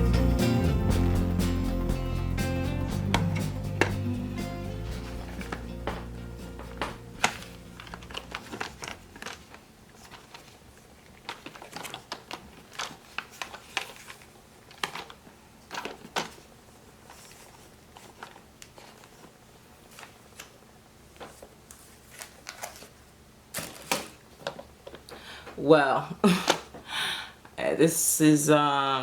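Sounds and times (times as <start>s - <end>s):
plastic parts clicking and knocking: 6.7s - 10.5s, 11.1s - 16.4s.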